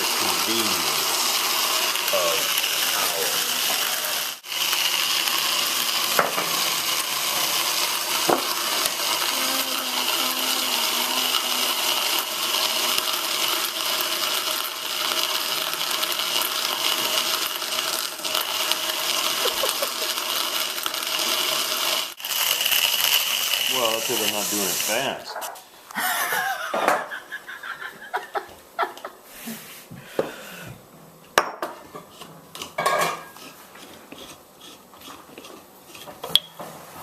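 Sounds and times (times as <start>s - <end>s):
coffee grinder whining: 0.0s - 25.3s.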